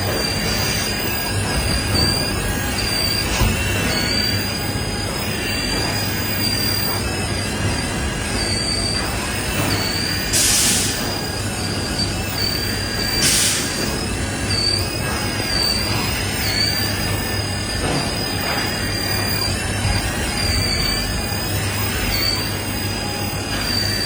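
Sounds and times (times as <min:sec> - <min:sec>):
high metallic squeal: 0:00.0 - 0:24.0
short bursts of hiss: 0:10.3 - 0:11.1, 0:13.2 - 0:13.8.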